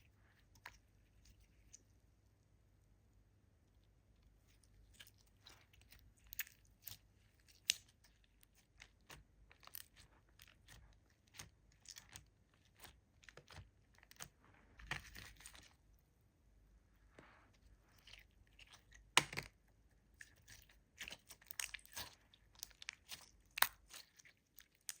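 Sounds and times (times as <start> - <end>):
slime squishing and popping: 4.9 - 15.6, 20.2 - 25.0.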